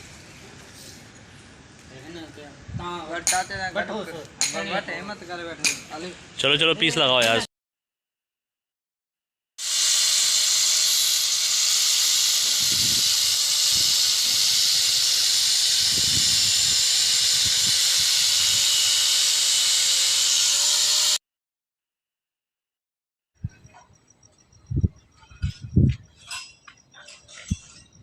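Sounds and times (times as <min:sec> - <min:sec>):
loud steady hiss: 0:09.6 - 0:21.2.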